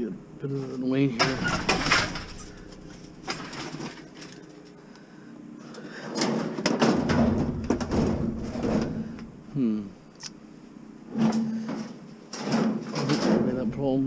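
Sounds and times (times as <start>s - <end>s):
appliance scraping and clunking: 0.6s - 4.8s, 6.1s - 9.4s, 11.1s - 14.0s
appliance knocking: 6.7s - 9.2s.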